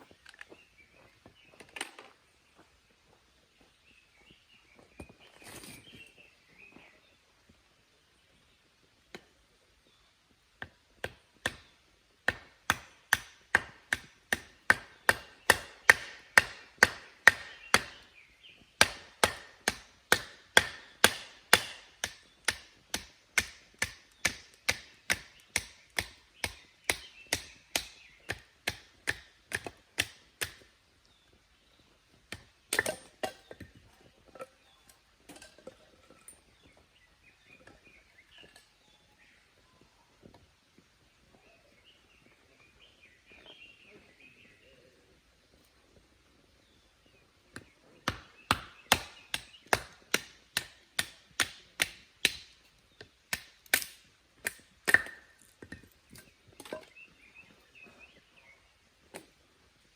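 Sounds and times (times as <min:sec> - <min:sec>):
hand tool strikes: 0:12.3 - 0:18.0, 0:18.8 - 0:30.6.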